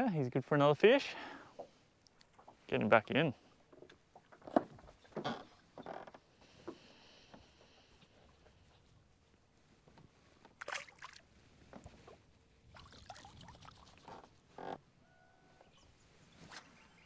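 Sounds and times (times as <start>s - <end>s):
faint water splashes: 10.3s - 14.5s.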